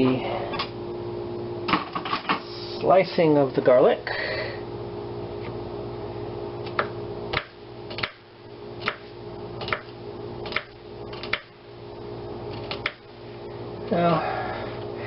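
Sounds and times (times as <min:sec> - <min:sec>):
background hum: 0:00.0 - 0:15.0.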